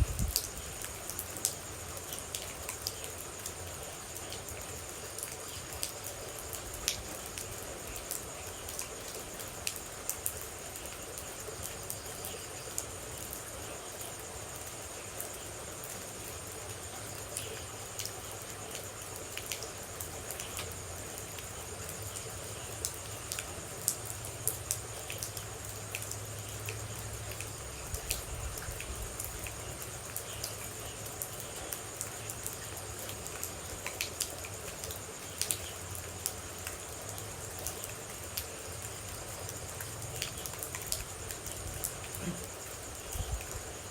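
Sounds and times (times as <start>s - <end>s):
steady rain: 0.0s - 43.9s
water droplets dripping: 22.1s - 43.5s.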